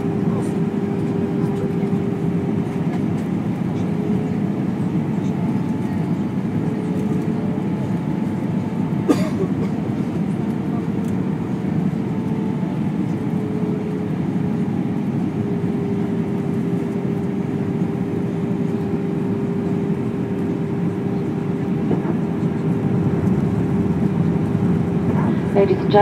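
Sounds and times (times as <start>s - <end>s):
airplane cabin airflow and engine drone: 0.0s - 26.0s
constant low hum: 0.0s - 26.0s.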